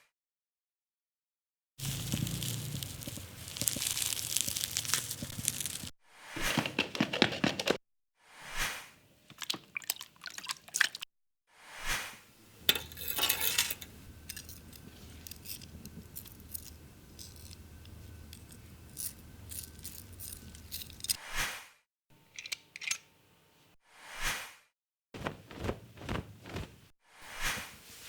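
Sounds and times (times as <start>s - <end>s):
low steady hum: 12.3s - 21.2s.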